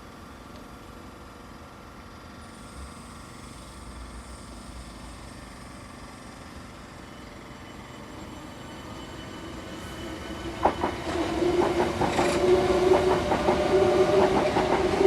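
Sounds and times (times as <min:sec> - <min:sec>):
faint high whine: 0:02.8 - 0:15.0
train rumbling on rails: 0:06.7 - 0:15.0.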